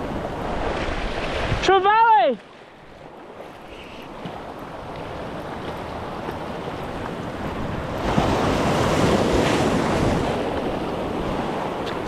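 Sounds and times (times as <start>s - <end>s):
surf washing against rocks: 0.0s - 12.0s
wind buffeting microphone: 4.1s - 12.0s.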